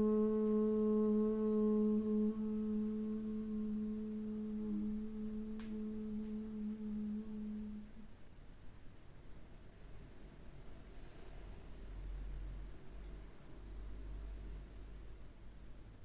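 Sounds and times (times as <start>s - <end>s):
woman humming low pitch: 0.0s - 8.2s.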